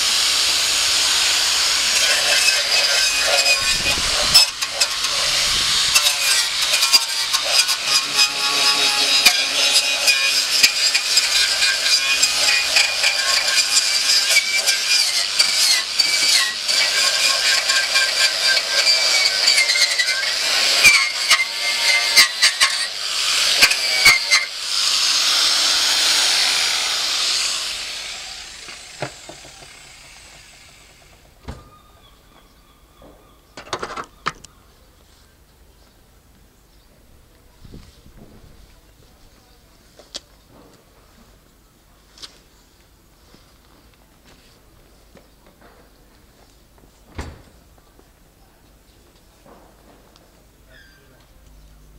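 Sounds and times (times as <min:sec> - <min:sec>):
power tool whining: 0:00.0 - 0:32.6.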